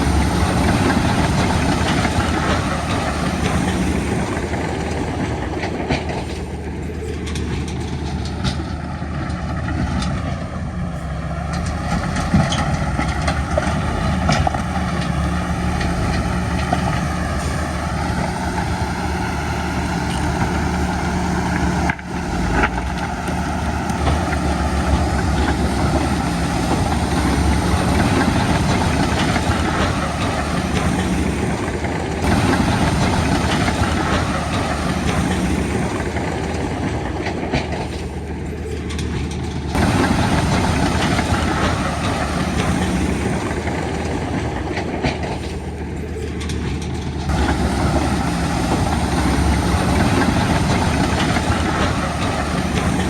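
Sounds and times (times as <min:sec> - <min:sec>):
heavy diesel machinery droning: 0:00.0 - 0:53.0.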